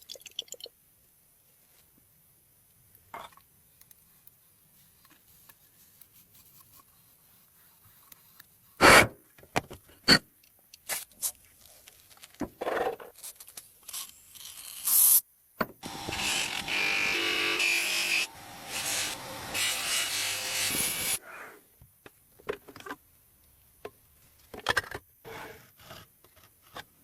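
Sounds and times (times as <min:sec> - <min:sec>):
scraping and knocking strokes: 0:15.8 - 0:21.2.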